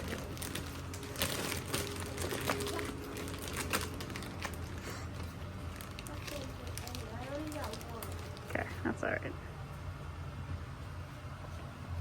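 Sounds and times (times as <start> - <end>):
plastic bag crinkling: 0.0 - 8.8.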